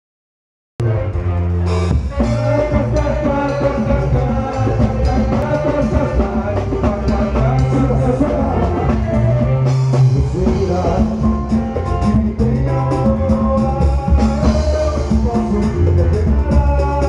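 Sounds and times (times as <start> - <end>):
drum kit and percussion beat: 0.8 - 17.0
live band music: 0.8 - 17.0.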